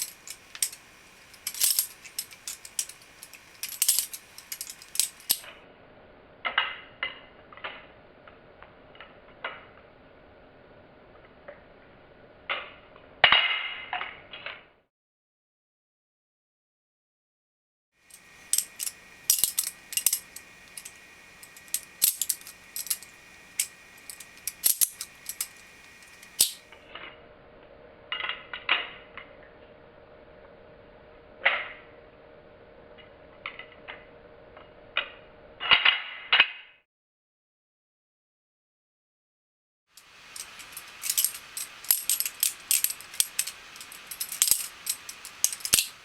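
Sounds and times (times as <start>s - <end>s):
faint steady hum: 0.0s - 13.3s, 18.0s - 35.6s, 40.0s - 46.0s
butterfly knife clicking: 18.1s - 26.6s.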